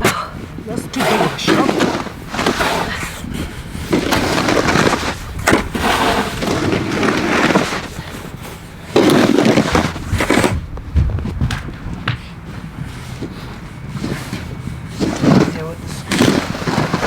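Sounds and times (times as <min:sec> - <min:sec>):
snow shovel scraping snow: 0:00.4 - 0:10.6, 0:12.4 - 0:17.0
sharp knocks: 0:09.5 - 0:13.0.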